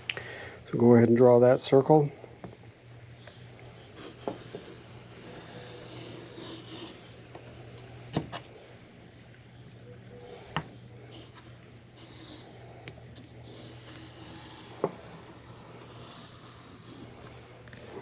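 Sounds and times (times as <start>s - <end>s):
pencil scratching on board: 3.9s - 7.0s, 10.6s - 18.0s.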